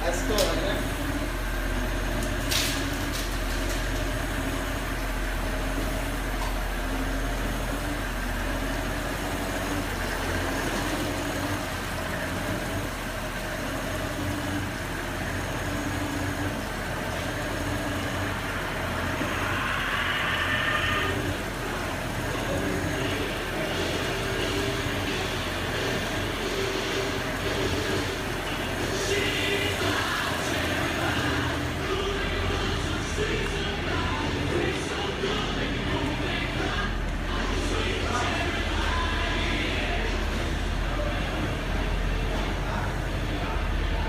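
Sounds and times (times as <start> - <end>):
car engine idling: 0.0 - 44.0
higher-pitched whine: 15.4 - 44.0.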